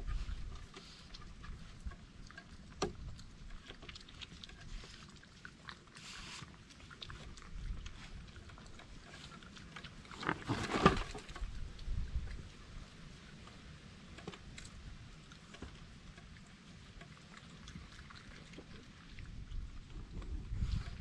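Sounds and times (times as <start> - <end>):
animals chewing and crunching: 0.0 - 21.0
rustling: 3.7 - 11.5.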